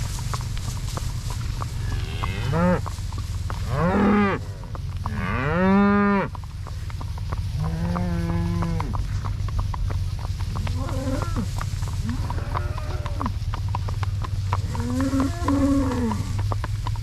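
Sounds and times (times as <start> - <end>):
cattle mooing: 1.8 - 2.9, 3.6 - 6.4, 7.6 - 9.0, 10.6 - 13.4, 14.6 - 16.6.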